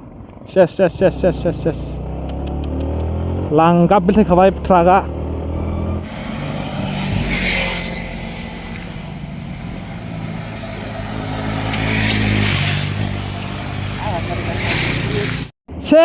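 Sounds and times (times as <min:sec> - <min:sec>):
wind and road rush: 0:00.0 - 0:16.0
motorcycle engine running: 0:00.9 - 0:15.4
loud whooshes: 0:05.0 - 0:15.5.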